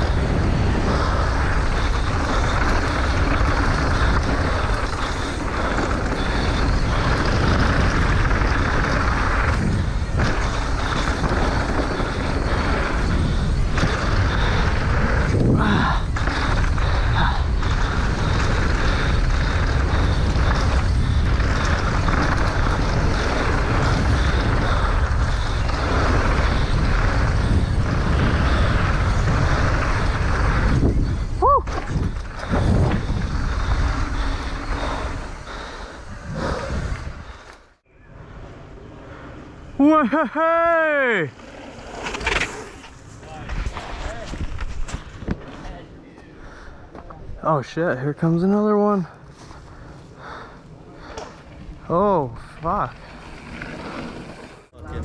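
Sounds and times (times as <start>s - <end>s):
mountain bike rattling on dirt: 0.0s - 37.8s, 39.5s - 45.8s, 46.5s - 55.0s
wind buffeting microphone: 0.0s - 39.8s.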